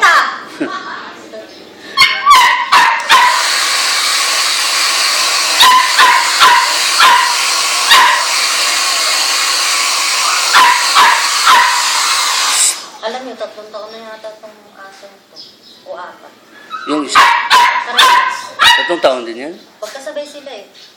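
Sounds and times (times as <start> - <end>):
blower running: 1.8 - 13.0
small dog yipping and barking: 2.0 - 3.6, 5.6 - 8.4, 10.3 - 12.1, 16.6 - 19.0.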